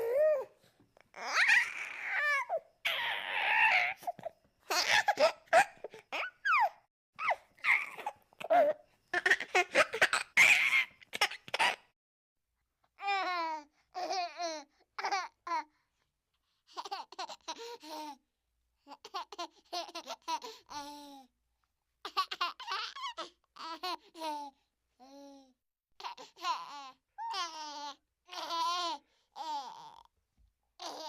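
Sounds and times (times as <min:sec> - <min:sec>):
baby laughing: 0:04.7 - 0:11.8, 0:16.7 - 0:18.1, 0:18.9 - 0:20.8.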